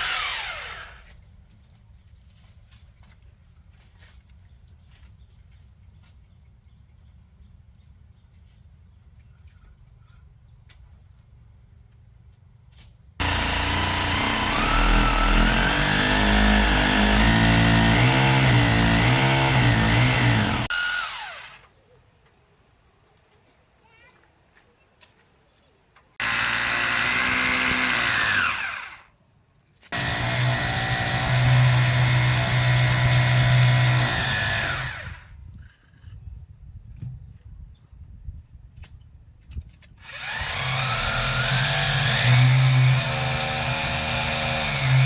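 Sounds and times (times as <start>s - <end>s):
small power tool motor running: 0.0s - 1.1s, 13.2s - 21.7s, 26.2s - 29.1s, 29.9s - 35.3s, 40.0s - 45.0s.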